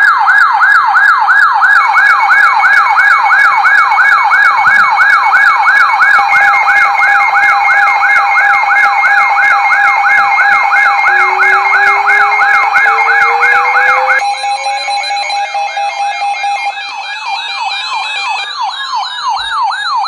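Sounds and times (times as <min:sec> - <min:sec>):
weather radio alarm falling siren tone: 0:10.7 - 0:14.2
slowly rising tone: 0:11.1 - 0:14.2
steady and pulsing beeps: 0:11.1 - 0:14.2.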